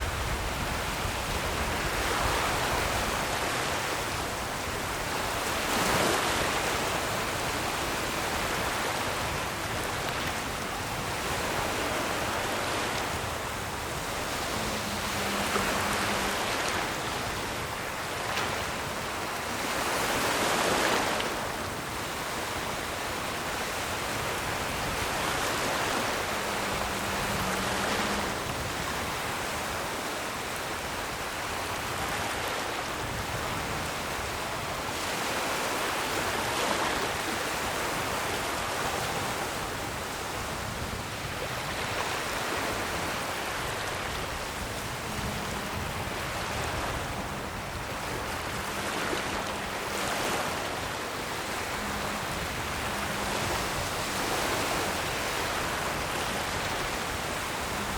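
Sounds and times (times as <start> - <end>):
ocean waves breaking: 0.0 - 57.9.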